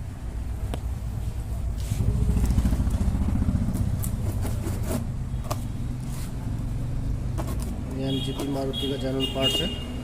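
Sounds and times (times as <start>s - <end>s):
vehicle engine running: 1.2s - 8.0s.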